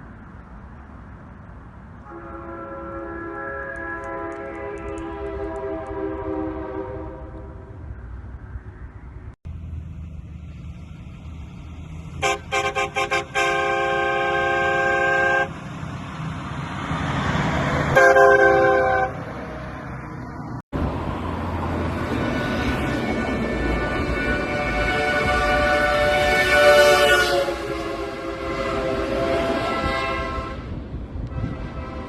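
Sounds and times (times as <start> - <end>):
vehicle rumble: 0.0 - 32.0
air horn blasts: 2.0 - 7.8, 12.2 - 15.5, 17.9 - 19.2, 22.2 - 32.0.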